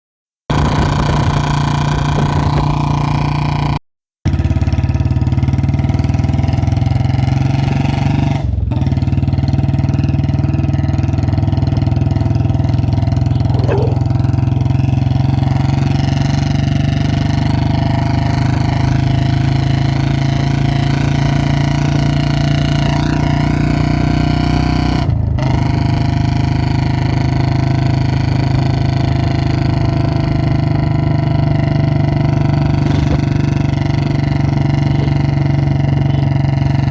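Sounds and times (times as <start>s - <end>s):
motorcycle engine idling: 8.7s - 24.1s, 28.2s - 36.9s.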